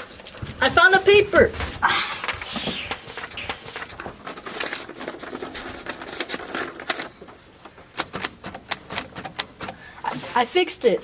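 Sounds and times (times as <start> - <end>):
paper rustling and crinkling: 0.0 - 7.7.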